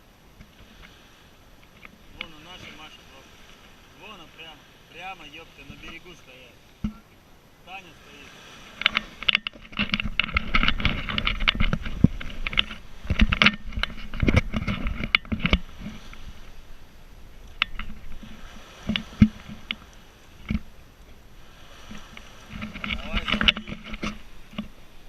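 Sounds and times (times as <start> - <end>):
water splashes: 0.0 - 25.0
boat engine running: 1.6 - 25.0.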